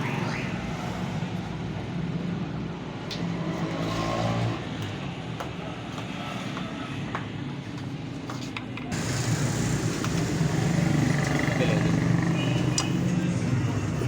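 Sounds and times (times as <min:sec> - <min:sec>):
vehicle engine humming: 0:08.9 - 0:14.0.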